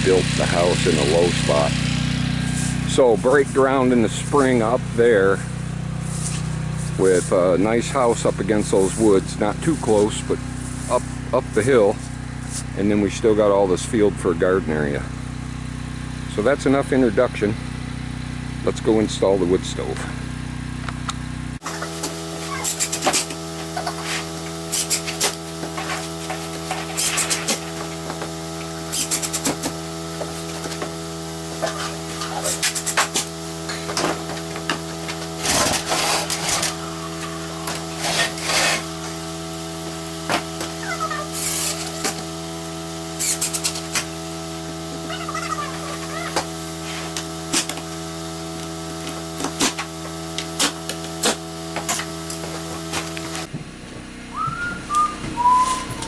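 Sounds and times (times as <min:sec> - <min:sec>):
steady hum: 0:20.8 - 0:56.0
knocks and scrapes of tools: 0:21.8 - 0:31.0, 0:31.6 - 0:39.2, 0:41.4 - 0:42.2, 0:43.2 - 0:44.1.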